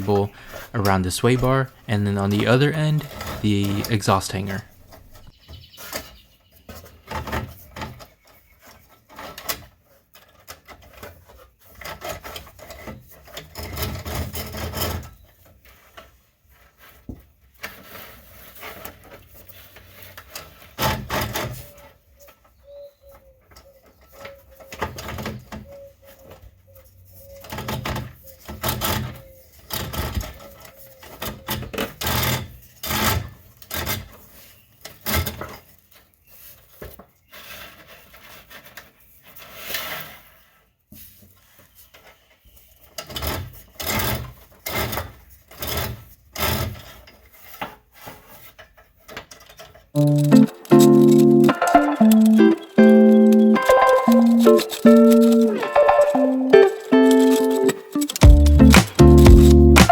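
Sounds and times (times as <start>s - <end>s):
steel cable scraping and rattling: 2.3s - 6.1s, 6.8s - 22.6s, 27.1s - 50.1s.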